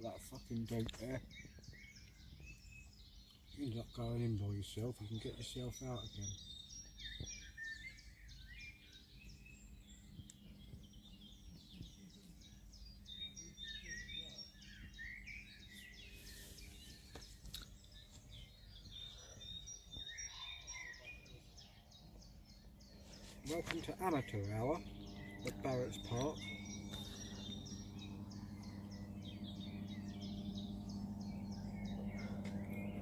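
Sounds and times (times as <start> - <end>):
small birds chirping: 0.0 - 33.0
low background rumble: 23.4 - 33.0.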